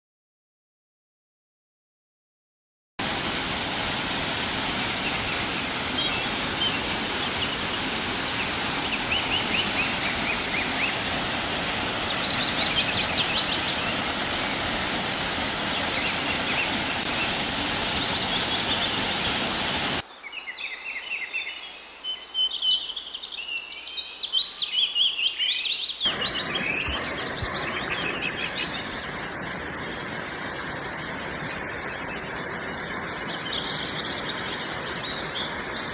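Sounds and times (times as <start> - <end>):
waterfall rushing: 3.0 - 20.0, 26.1 - 35.9
small birds chirping: 4.8 - 35.9.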